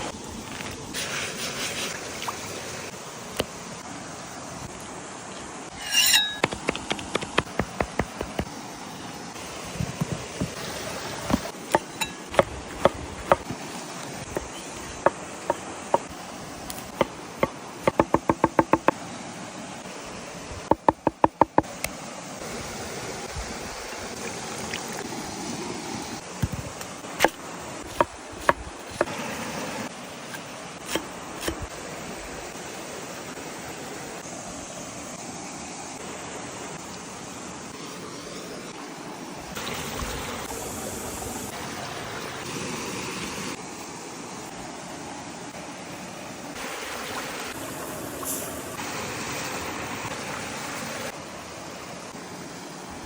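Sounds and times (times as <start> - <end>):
sharp knocks and taps: 6.4 - 8.5, 17.0 - 19.0, 20.7 - 21.7.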